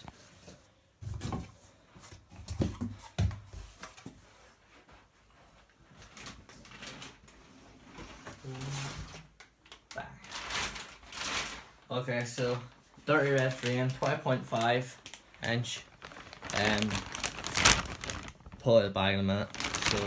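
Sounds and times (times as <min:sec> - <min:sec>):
packaging rustling and scraping: 0:10.3 - 0:11.8, 0:12.4 - 0:20.0.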